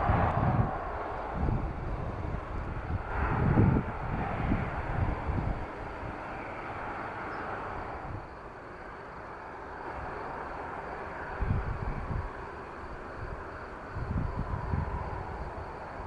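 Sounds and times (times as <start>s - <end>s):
low rumbles: 0.0s - 5.6s
jet engines rushing: 0.0s - 9.0s.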